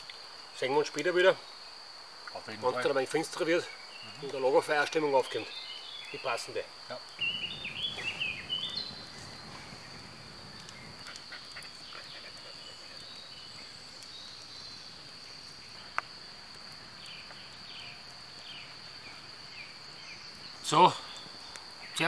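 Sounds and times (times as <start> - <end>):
high-pitched cricket trill: 0.0 - 22.0
short bird chirps: 7.2 - 11.0.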